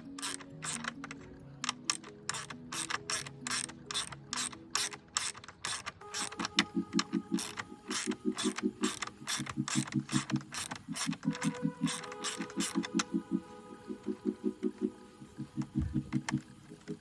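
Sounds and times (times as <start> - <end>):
ratchet clicking: 0.0 - 13.1
quiet background music: 0.0 - 17.0.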